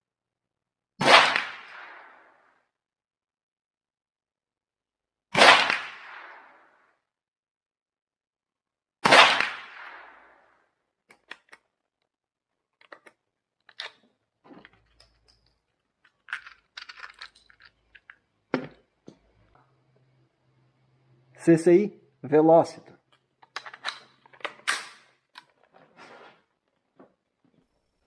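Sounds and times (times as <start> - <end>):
rifle shot: 1.0 - 2.4, 5.4 - 6.7, 9.0 - 10.4
small clicks and knocks: 12.7 - 20.1, 23.1 - 26.0.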